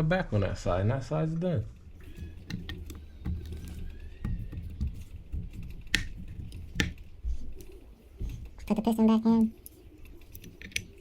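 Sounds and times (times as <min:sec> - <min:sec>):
small metal parts clicking: 0:09.6 - 0:11.0.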